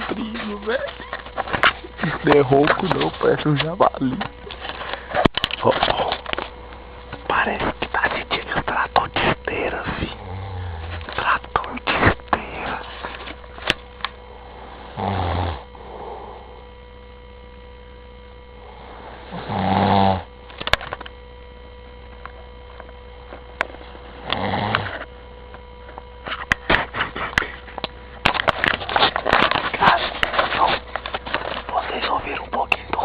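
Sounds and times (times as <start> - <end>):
steady electrical hum: 0.0 - 33.0
man snoring heavily: 10.0 - 11.1, 14.3 - 16.6, 18.6 - 20.3, 24.2 - 25.0
clicks and rustling: 25.0 - 33.0.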